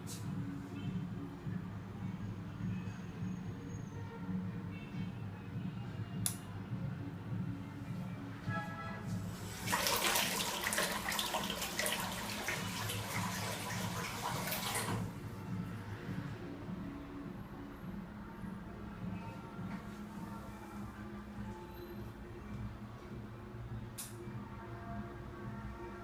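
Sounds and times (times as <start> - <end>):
water rushing from pump outlet: 9.4 - 15.1.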